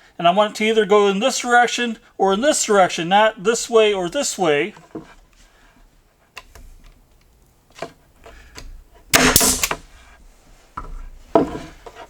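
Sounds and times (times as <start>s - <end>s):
handling clicks: 6.4s - 9.9s
nail gun firing: 9.1s - 9.9s.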